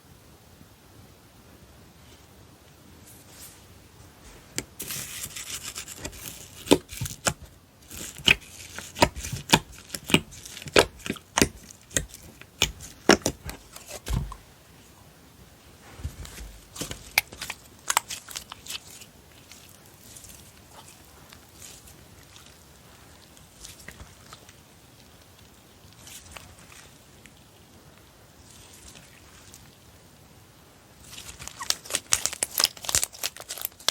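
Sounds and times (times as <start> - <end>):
slime rustling: 3.0 - 15.0, 15.6 - 27.7, 31.0 - 33.9.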